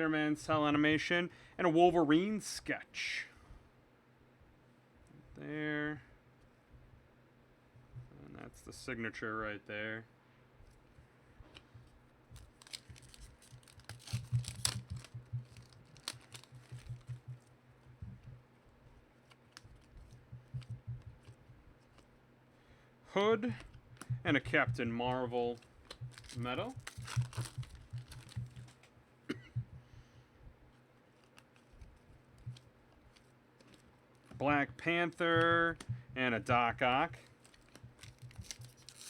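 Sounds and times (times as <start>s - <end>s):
low steady hum: 0.0s - 39.0s
trading cards clicking and tapping: 11.6s - 18.4s, 19.3s - 22.1s, 23.5s - 28.9s, 31.2s - 36.6s, 37.2s - 39.0s
card packs rustling and tearing: 12.4s - 17.2s, 25.5s - 28.9s, 37.2s - 39.0s.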